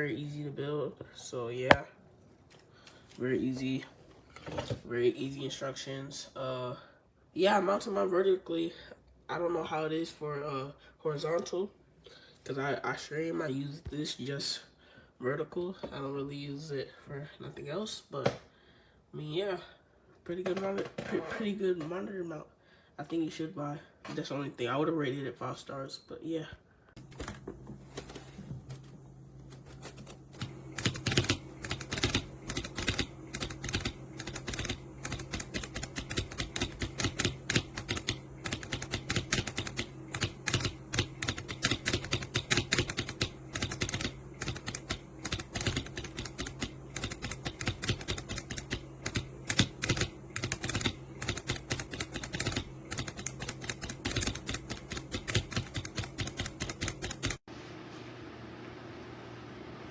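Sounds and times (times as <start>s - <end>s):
steady low hum: 26.5s - 59.9s
fast typing on keyboard: 30.4s - 57.4s.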